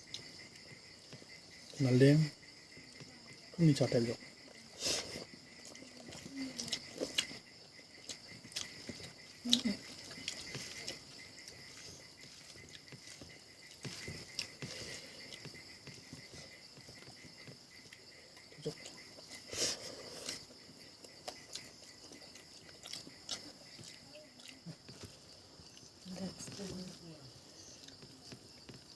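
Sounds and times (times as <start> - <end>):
insects chirring: 0.0 - 28.9
person chewing: 4.7 - 26.0.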